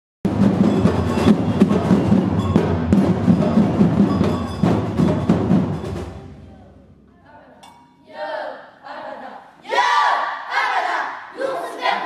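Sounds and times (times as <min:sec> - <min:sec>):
percussion ensemble drumming: 0:00.2 - 0:07.8
metallic bell-like tones: 0:00.6 - 0:08.2.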